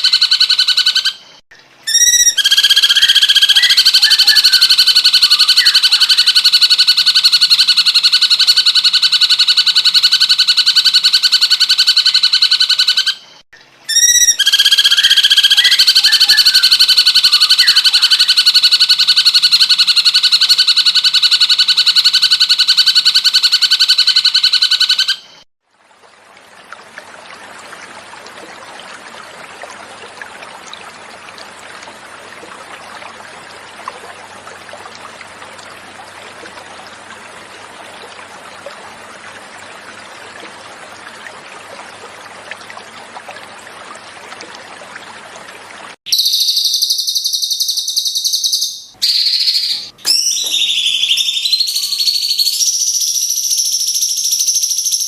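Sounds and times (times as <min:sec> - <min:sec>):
bird rapid trill: 0:01.9 - 0:04.6, 0:13.9 - 0:18.4, 0:46.1 - 0:55.0.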